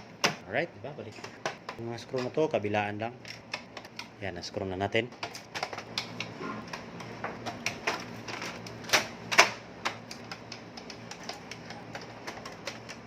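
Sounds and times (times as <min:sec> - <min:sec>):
plastic printer parts clicking: 0:07.4 - 0:13.0.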